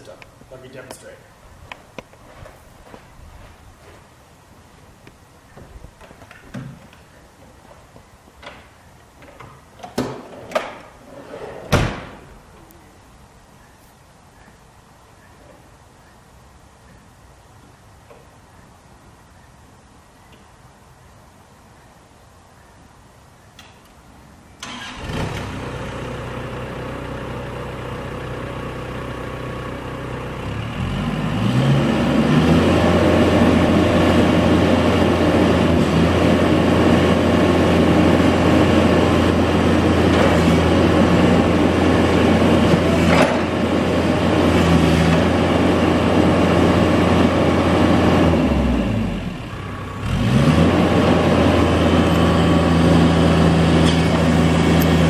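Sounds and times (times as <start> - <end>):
excavator diesel engine: 24.6 - 55.0.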